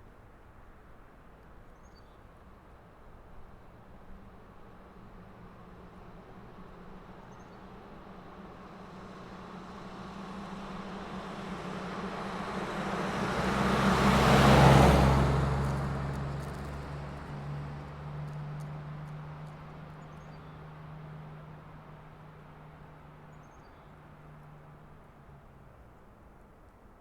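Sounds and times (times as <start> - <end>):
car driving past: 8.7 - 25.6.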